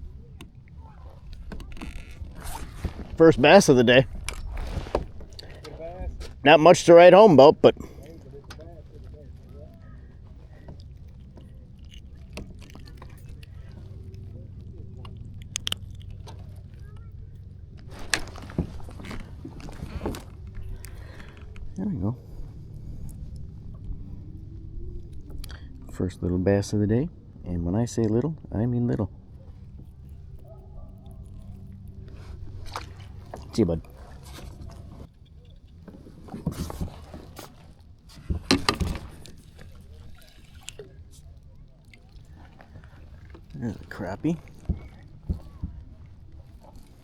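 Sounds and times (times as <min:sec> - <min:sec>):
knocks and clicks in a kayak: 0:00.0 - 0:47.0
light water splashing: 0:00.0 - 0:47.0
steady low hum: 0:00.0 - 0:47.0.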